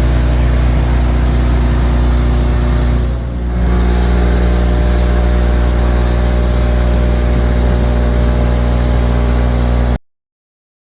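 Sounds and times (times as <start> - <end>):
milling machine cutting hum: 0.0 - 10.0.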